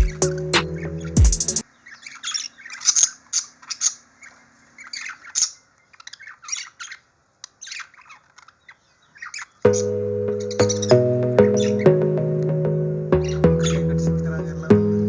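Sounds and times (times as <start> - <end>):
birds chirping and squawking: 1.0 - 9.6.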